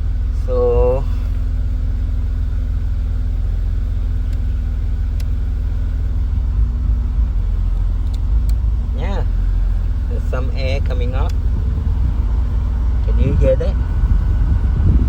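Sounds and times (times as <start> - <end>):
blower motor running: 0.0 - 15.0.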